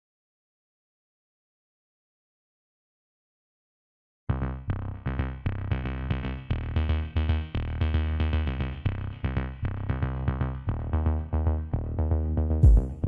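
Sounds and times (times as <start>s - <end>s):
heavy bass line: 4.3s - 13.0s
drum machine beat: 12.6s - 13.0s.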